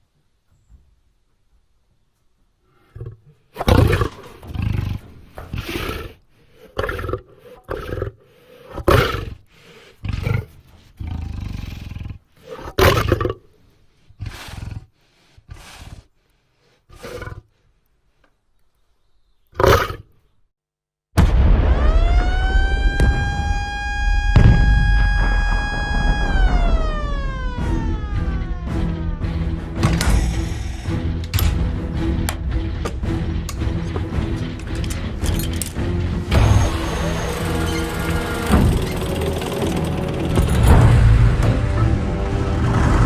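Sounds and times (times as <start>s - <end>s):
large beast roaring and snarling: 40.5s - 43.0s.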